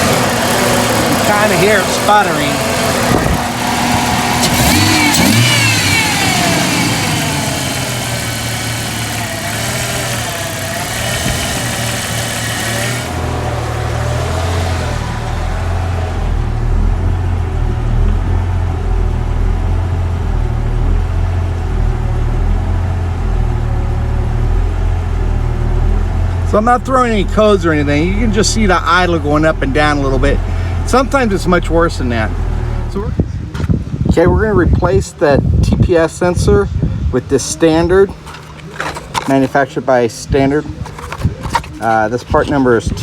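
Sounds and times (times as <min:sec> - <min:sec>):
car engine idling and sputtering: 0:00.0 - 0:43.0.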